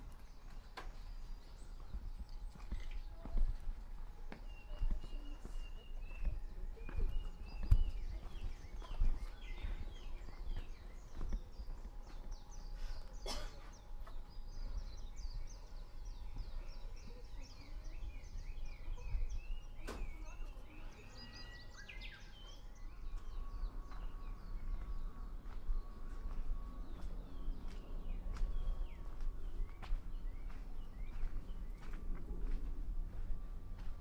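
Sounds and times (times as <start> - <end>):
birds chirping and twittering: 0.0 - 34.0
low rumble: 22.8 - 34.0.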